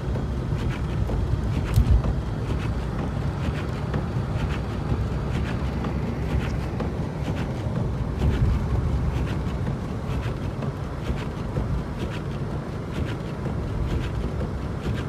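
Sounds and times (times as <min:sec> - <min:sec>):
car tyres and engine rumble: 0:00.0 - 0:15.0
wind noise: 0:00.0 - 0:15.0.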